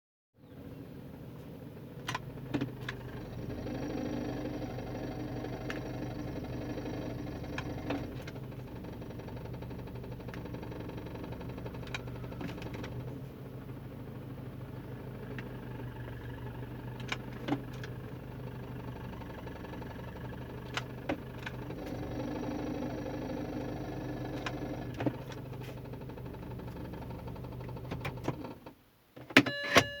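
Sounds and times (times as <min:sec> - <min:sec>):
car transmission hum with high tones: 0:00.4 - 0:30.0.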